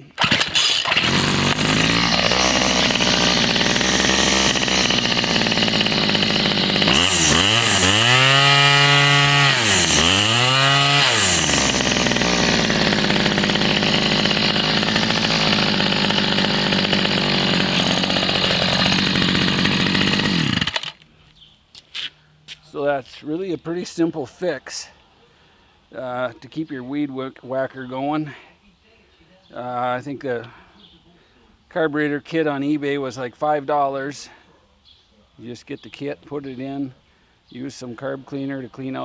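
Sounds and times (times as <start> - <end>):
string trimmer engine revving: 0.0 - 21.0.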